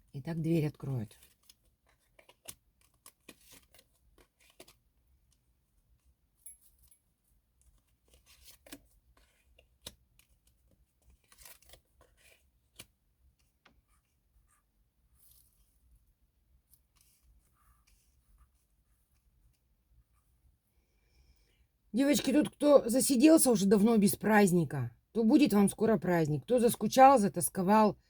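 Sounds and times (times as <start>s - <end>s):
cards clicking and rustling: 1.2s - 4.8s, 7.8s - 13.0s.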